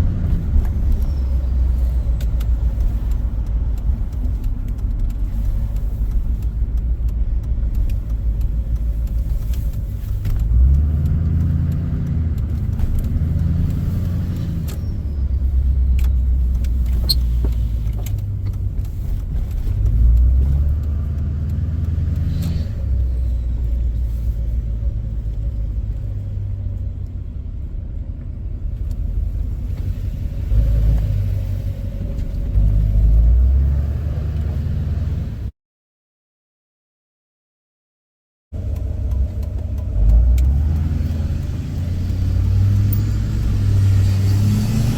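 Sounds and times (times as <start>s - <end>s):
pickup truck engine rumble: 38.6s - 44.9s.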